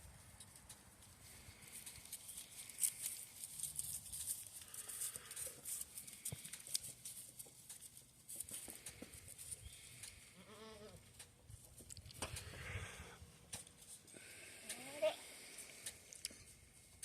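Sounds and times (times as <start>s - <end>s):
light clicks and rustling: 0.3s - 10.4s, 13.4s - 14.2s
goat bleating: 10.4s - 11.0s, 14.6s - 15.3s.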